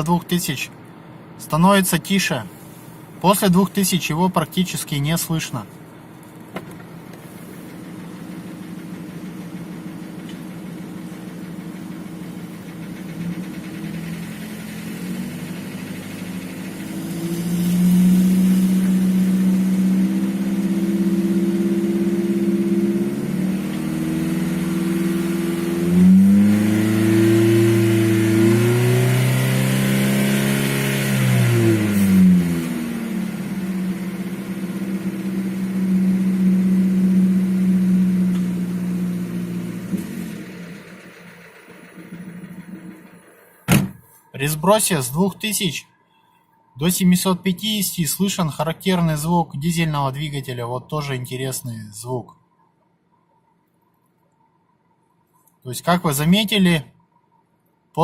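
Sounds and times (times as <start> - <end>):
car engine revving: 6.6 - 44.0
engine knocking: 7.6 - 17.0, 40.3 - 43.5.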